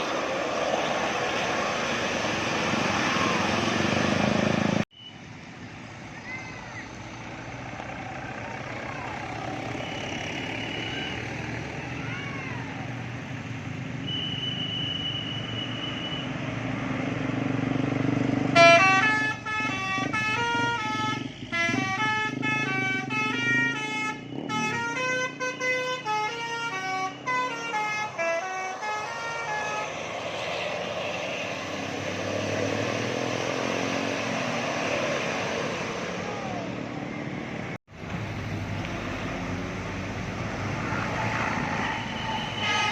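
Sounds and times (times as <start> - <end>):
bus engine and road noise: 0.0 - 42.9
multi-tone air horn melody: 18.6 - 30.0, 42.2 - 42.9.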